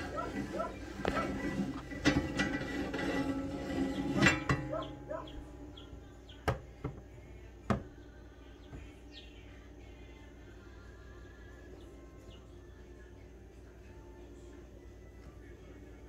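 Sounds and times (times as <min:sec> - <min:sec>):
metal clanks and knocks: 0:00.0 - 0:05.8
faint bird chirps: 0:07.9 - 0:09.7.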